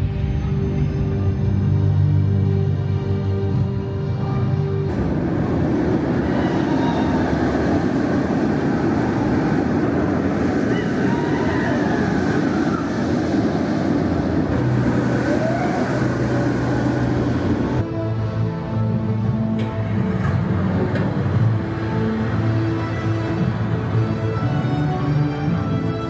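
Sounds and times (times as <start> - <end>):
music: 0.0 - 26.0
faint voices: 4.2 - 17.8
loud rushing noise: 4.8 - 18.2.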